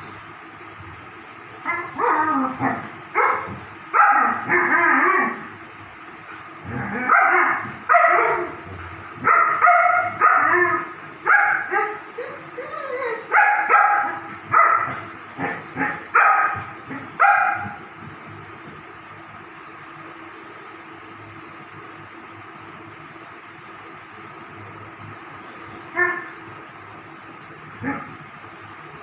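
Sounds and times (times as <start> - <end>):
dogs barking and yipping: 1.6 - 5.4, 7.0 - 18.0.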